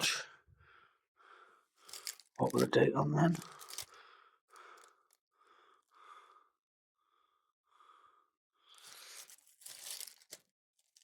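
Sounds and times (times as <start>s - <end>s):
person breathing softly: 0.3s - 2.3s, 3.4s - 9.4s.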